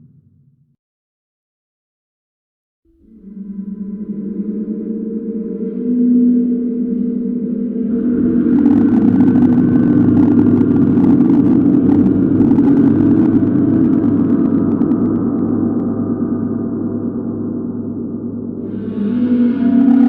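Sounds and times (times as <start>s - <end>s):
gong-like metallic drone: 2.9s - 20.0s
faint crackle: 7.9s - 16.1s.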